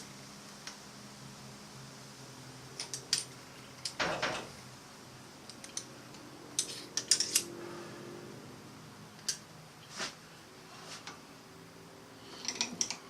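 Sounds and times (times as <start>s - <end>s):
scraping rustle: 9.8s - 11.2s.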